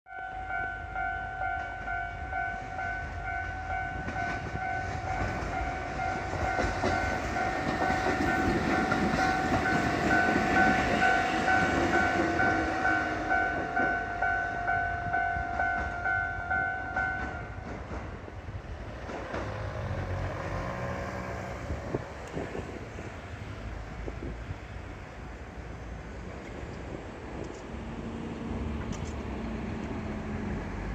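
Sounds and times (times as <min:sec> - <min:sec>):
level-crossing warning bell: 0:00.1 - 0:17.7
train wheels rumbling on rails: 0:00.8 - 0:30.9.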